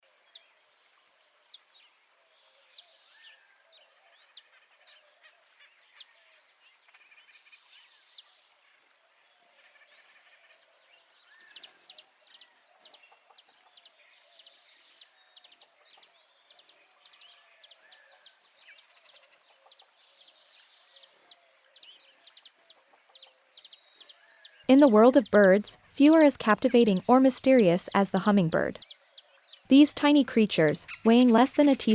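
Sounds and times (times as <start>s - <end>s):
bird chirps: 11.4s - 29.0s, 30.5s - 31.9s.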